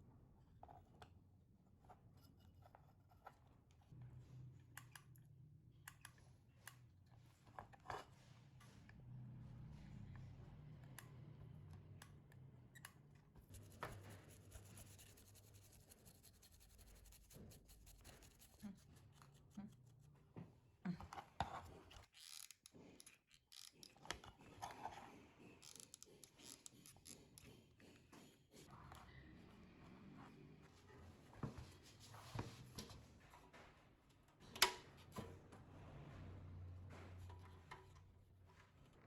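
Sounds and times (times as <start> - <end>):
small tools clicking and scraping: 21.4 - 28.7.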